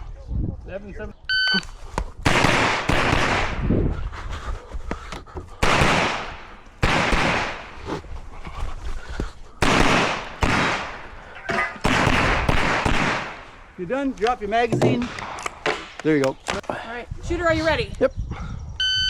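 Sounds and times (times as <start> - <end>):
loud pistol shots echoing: 2.2 - 3.7, 5.6 - 8.0, 9.6 - 13.8, 15.0 - 16.0
faint gunshot cracks: 2.3 - 3.6, 5.6 - 7.8, 9.6 - 11.1, 11.8 - 13.5.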